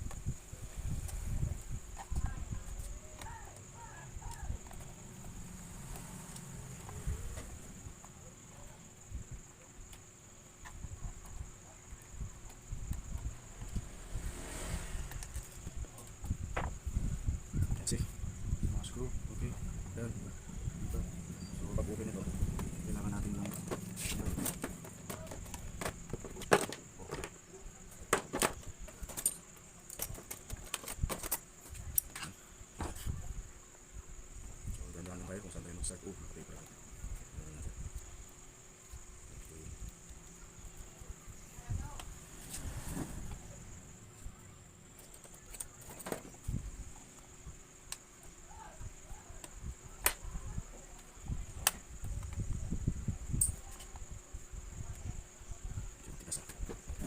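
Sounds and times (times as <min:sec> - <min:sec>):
faint high whine: 0:10.7 - 0:26.2
handling bumps and rubbing: 0:21.8 - 0:33.2.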